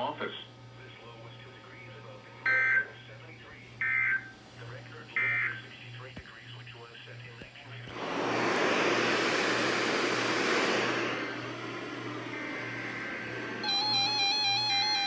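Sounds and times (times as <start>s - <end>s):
radio static hiss: 3.0s - 14.9s
electronic beeping melody: 13.6s - 15.0s.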